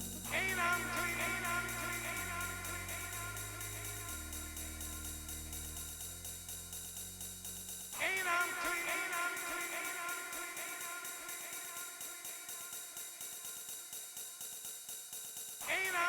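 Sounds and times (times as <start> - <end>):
synth bass line: 0.0 - 7.9
drum machine hi-hat: 0.0 - 16.0.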